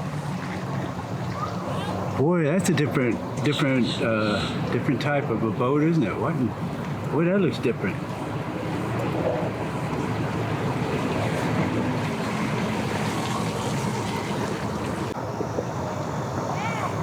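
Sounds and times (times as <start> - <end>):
boat motor humming: 0.0 - 17.0
water rushing: 0.0 - 17.0
wind: 0.0 - 17.0.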